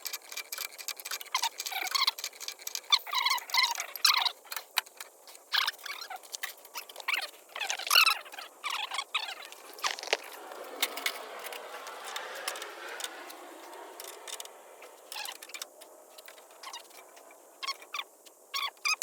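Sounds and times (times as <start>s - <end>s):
small metallic clicks and clinks: 0.0s - 19.0s
short high squeaks: 5.5s - 11.6s, 14.0s - 19.0s.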